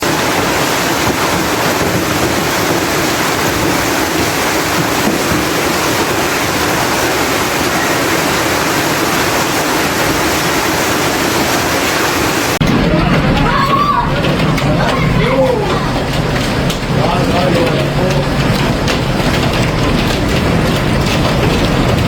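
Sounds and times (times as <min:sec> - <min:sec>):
hail and rain pelting: 0:00.0 - 0:22.0.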